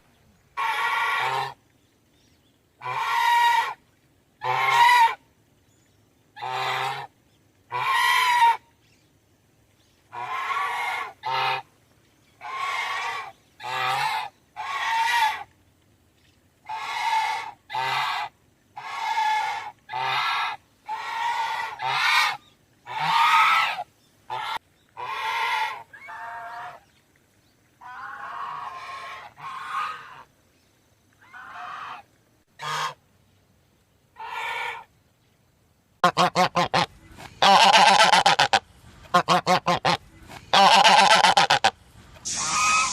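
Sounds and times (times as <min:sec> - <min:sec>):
goose honking: 0:00.6 - 0:01.6, 0:02.8 - 0:03.8, 0:04.4 - 0:05.2, 0:07.7 - 0:08.6, 0:16.7 - 0:26.8, 0:27.8 - 0:30.2, 0:31.3 - 0:32.0, 0:32.6 - 0:33.0, 0:36.0 - 0:42.9.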